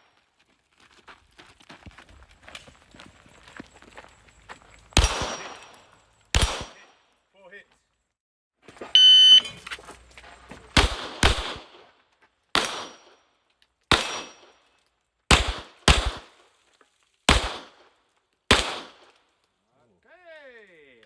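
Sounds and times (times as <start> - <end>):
pistol shots with echo: 5.0 - 6.9, 10.8 - 11.9, 12.5 - 13.2, 13.9 - 14.6, 15.3 - 16.4, 17.3 - 17.9, 18.5 - 19.1
shot timer beep: 9.0 - 9.5.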